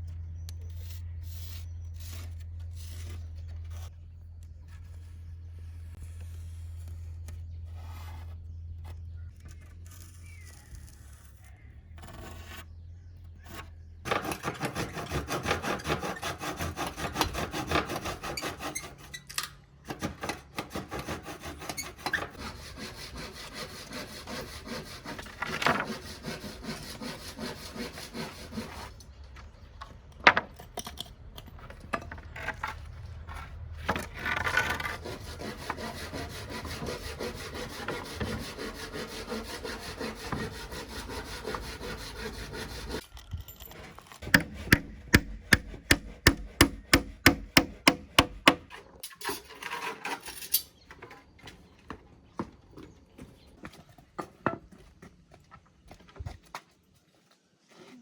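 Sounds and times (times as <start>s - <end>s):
hand saw cutting wood: 14.1s - 19.3s, 19.9s - 29.0s, 33.9s - 43.0s, 44.2s - 49.0s.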